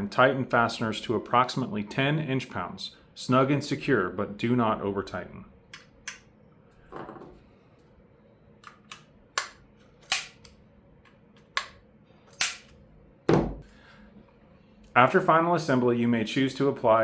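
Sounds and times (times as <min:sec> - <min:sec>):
sharp clicks and taps: 0:08.6 - 0:12.8
heavy knock: 0:13.3 - 0:13.6.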